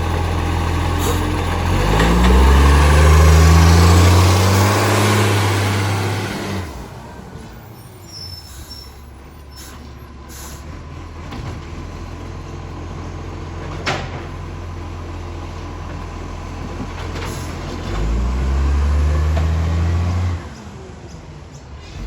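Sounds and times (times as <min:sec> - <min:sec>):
truck engine idling: 0:00.0 - 0:13.7.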